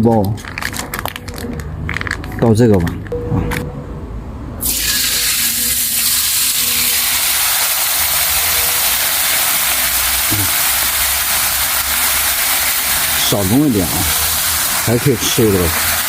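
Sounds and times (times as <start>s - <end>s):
paste sizzling in hot oil: 4.6s - 16.0s.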